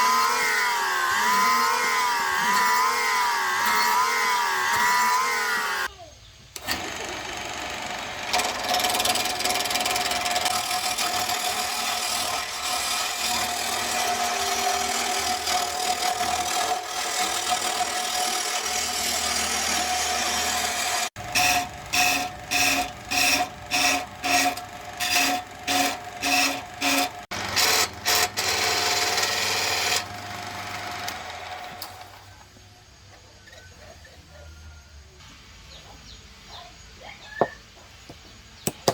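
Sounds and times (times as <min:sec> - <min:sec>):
tool rasping wood: 0:08.4 - 0:30.1, 0:38.1 - 0:38.9.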